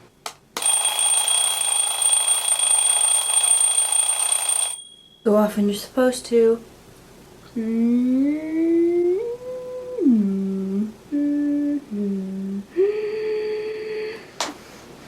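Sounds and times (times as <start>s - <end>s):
girl humming a tune: 7.5s - 14.3s.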